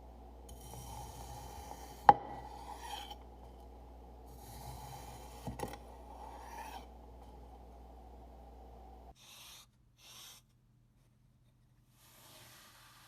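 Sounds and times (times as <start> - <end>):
knife scraping sand: 0.5 - 3.2, 4.3 - 7.0.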